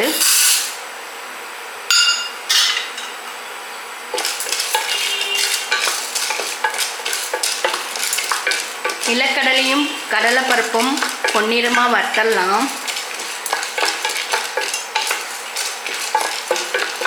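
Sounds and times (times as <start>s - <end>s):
nuts rattling into pan: 4.1s - 17.0s
spatula stirring and scraping: 4.1s - 17.0s.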